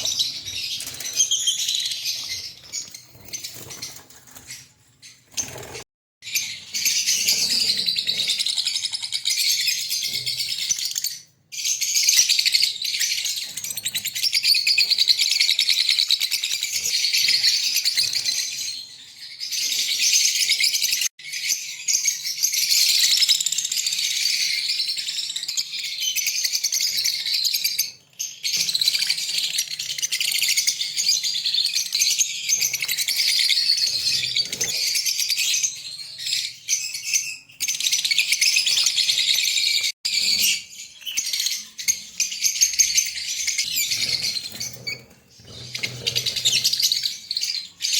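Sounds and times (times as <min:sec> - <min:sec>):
lovebirds chattering and chirping: 0:25.7 - 0:47.9.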